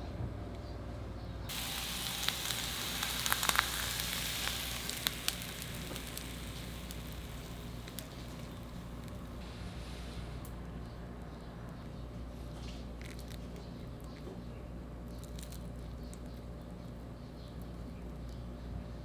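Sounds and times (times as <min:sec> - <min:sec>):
food sizzling in frying pan: 0:01.5 - 0:09.4.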